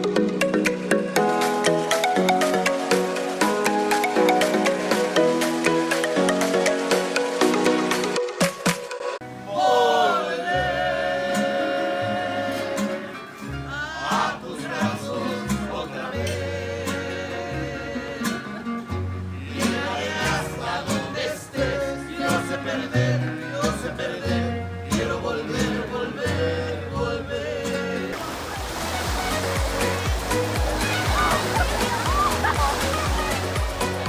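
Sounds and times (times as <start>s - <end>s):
person singing: 9.5s - 18.8s
plucked guitar: 10.6s - 34.0s
bass line: 28.2s - 34.0s.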